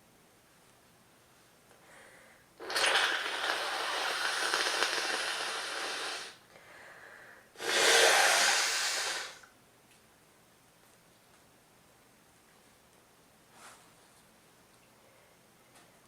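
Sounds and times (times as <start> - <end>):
person blowing nose: 2.6 - 6.4, 7.6 - 9.4.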